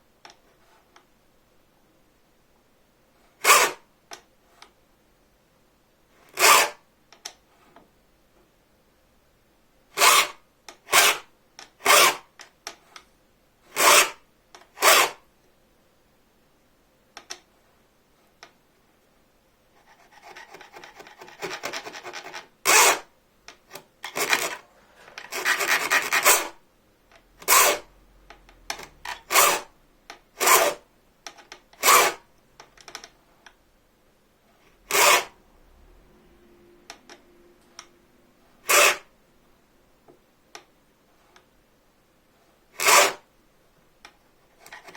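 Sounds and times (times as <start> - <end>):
hand file rasping on saw blade: 6.4 - 6.8, 10.0 - 10.4, 11.9 - 12.2, 13.8 - 14.2, 14.8 - 15.2, 19.9 - 23.0, 24.1 - 24.6, 25.2 - 26.6, 27.4 - 27.9, 29.1 - 29.7, 30.4 - 30.8, 31.8 - 32.2, 34.9 - 35.4, 38.6 - 39.1, 42.8 - 43.2.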